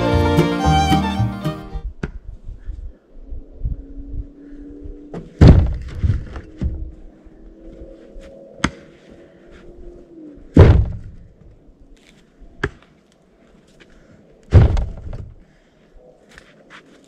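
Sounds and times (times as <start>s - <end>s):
logs thunking into truck bed: 5.4s - 6.0s, 10.6s - 11.1s.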